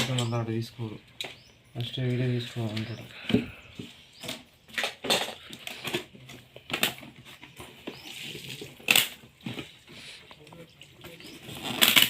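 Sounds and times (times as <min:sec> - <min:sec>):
packaging rustling and crinkling: 0:11.1 - 0:12.0.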